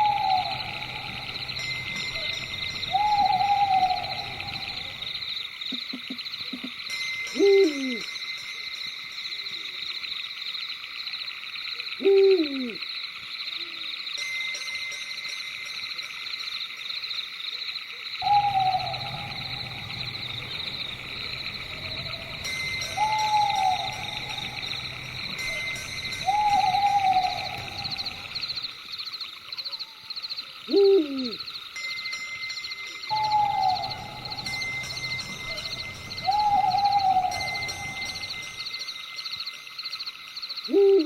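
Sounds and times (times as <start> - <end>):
owl hoots: 0.0 - 5.1, 12.0 - 12.8, 18.2 - 28.6, 30.7 - 31.4, 33.1 - 34.6, 35.5 - 38.4, 40.7 - 41.0
crickets trilling: 0.0 - 41.0
low hum: 18.2 - 28.7, 33.1 - 38.6.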